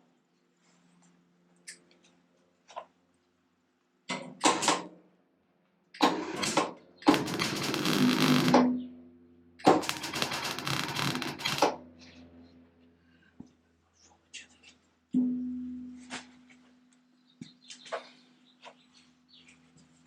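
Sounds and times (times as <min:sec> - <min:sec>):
welder bursts: 0:07.0 - 0:08.7, 0:09.7 - 0:11.8
low steady hum: 0:07.8 - 0:20.0.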